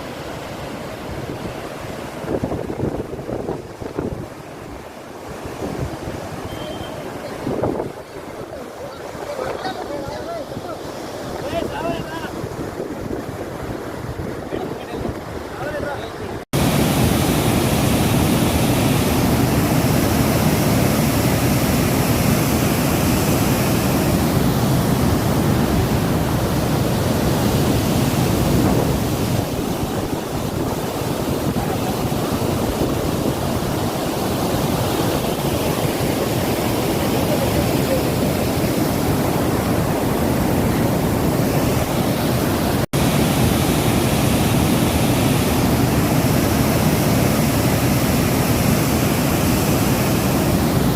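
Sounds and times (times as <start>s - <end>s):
water rushing through spillway: 13.4s - 50.9s.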